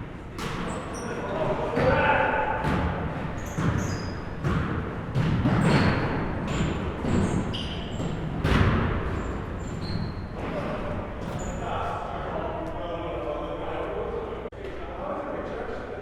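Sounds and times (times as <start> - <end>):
sneaker squeaks: 0.3 - 12.0
basketball bouncing on hardwood: 2.6 - 7.4, 8.0 - 9.3.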